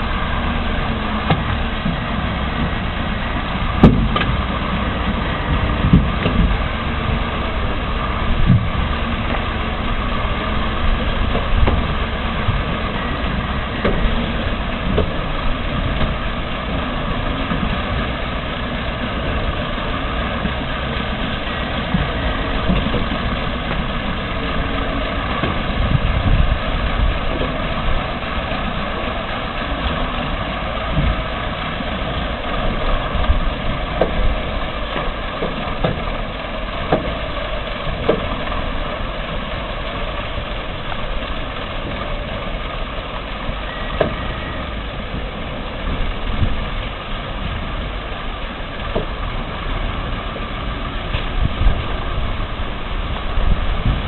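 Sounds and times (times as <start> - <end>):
heavy machine engine running: 0.0 - 54.0
knocks and clunks: 1.1 - 2.9, 3.7 - 7.3, 8.3 - 9.5, 30.8 - 36.2, 36.8 - 37.2.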